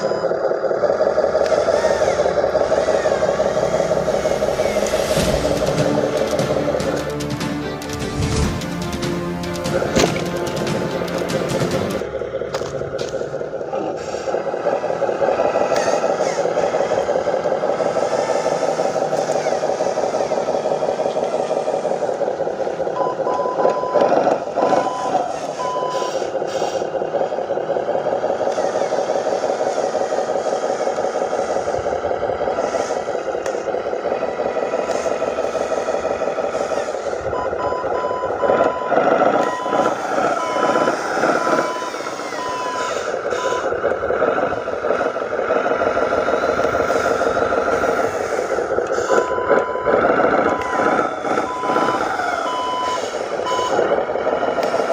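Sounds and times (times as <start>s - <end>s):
reversing beeper: 0.0s - 54.9s
toy truck motor droning: 0.0s - 54.9s.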